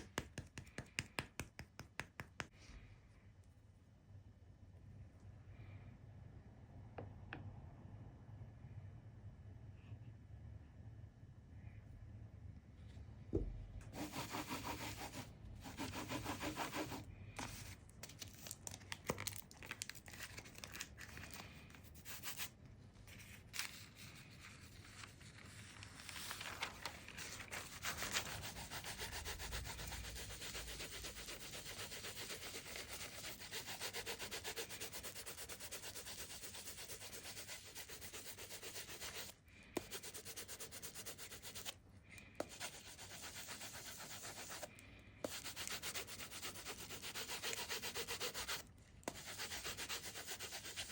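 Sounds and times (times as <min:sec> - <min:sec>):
rubbing against hard surface: 0:13.9 - 0:17.8, 0:42.4 - 0:50.9.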